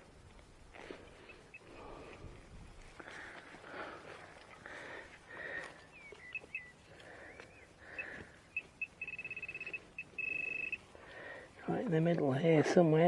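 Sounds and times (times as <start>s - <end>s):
metal detector pinpointer beeping: 1.2s - 1.9s, 8.0s - 10.9s.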